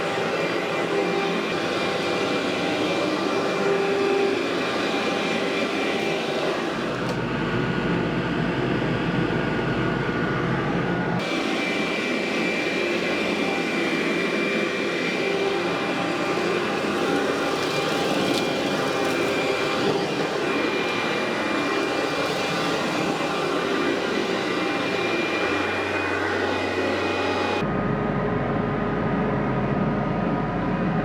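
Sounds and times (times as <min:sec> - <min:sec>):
vacuum cleaner on carpet: 0:00.0 - 0:07.2, 0:11.2 - 0:27.7.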